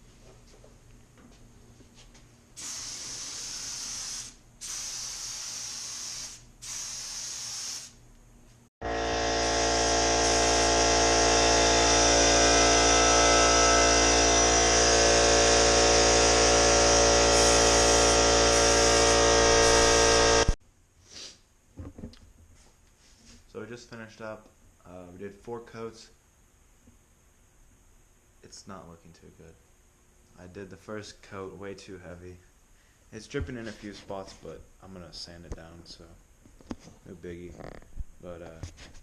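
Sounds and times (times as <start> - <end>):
air compressor humming: 2.6 - 8.0, 8.8 - 20.6
spray gun hissing: 2.6 - 8.0, 16.5 - 20.6.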